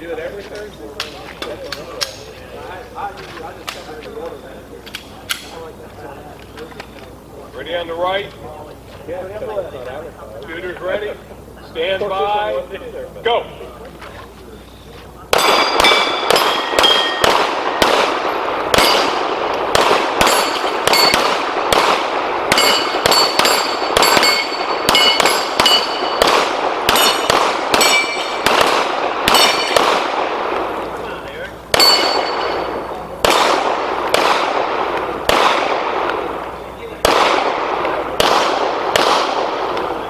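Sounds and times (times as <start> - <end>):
steel plate targets ringing: 15.3 - 19.3, 20.1 - 21.6, 22.5 - 28.6, 29.2 - 30.0, 31.7 - 33.0
rapid pistol fire: 15.3 - 30.8, 31.7 - 40.0.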